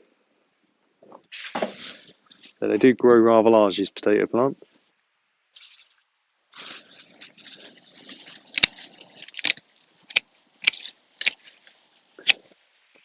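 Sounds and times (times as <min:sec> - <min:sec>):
plant foliage rustling: 0:01.3 - 0:03.0, 0:05.5 - 0:13.0.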